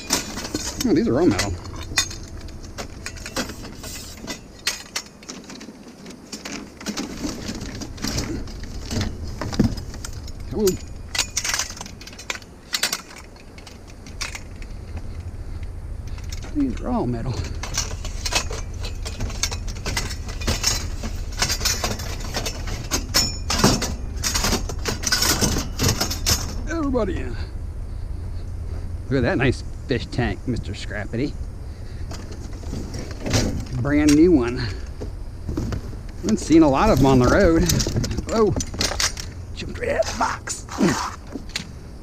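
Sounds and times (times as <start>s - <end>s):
low engine hum: 0.0s - 4.7s, 6.7s - 42.0s
metal pieces knocking and clinking: 0.0s - 15.3s, 16.1s - 26.6s.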